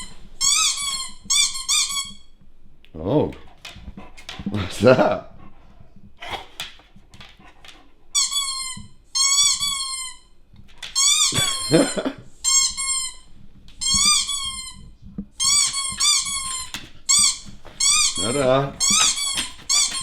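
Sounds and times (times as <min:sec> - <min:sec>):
squeaky dog toy squeaking: 0:00.0 - 0:02.3, 0:08.2 - 0:20.0.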